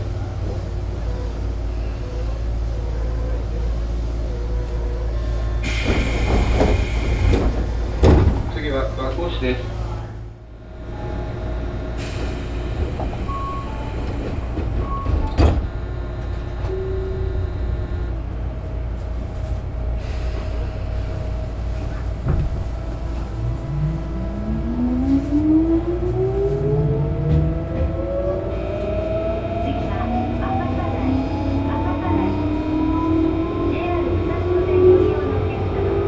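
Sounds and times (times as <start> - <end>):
train equipment hum and tones: 0.0 - 36.0
traction motor whine rising: 23.3 - 34.8.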